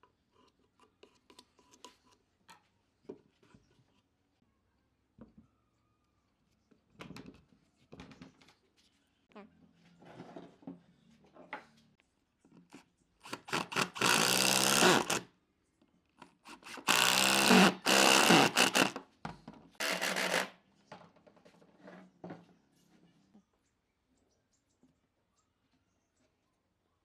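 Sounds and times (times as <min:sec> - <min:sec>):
hand tool scraping wood: 0:13.2 - 0:15.2, 0:16.4 - 0:19.0, 0:19.8 - 0:20.5.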